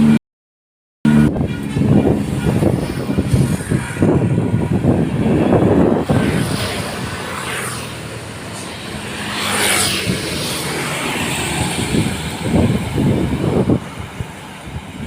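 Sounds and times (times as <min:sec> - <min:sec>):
heavy truck driving past: 0:01.1 - 0:15.0
low rumbling gusts: 0:01.1 - 0:15.0.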